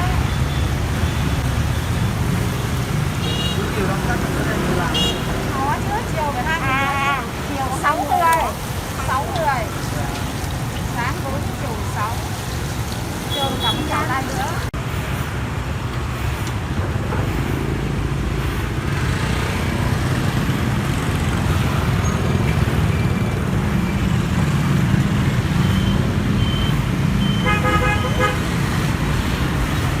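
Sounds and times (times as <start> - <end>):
motorbike and car engines: 0.0 - 30.0
horn honking short beeps: 25.7 - 28.4.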